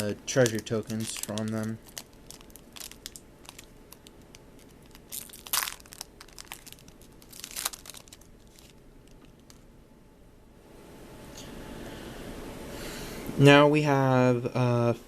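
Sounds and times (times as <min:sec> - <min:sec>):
card wrappers crinkling: 0:00.0 - 0:09.7.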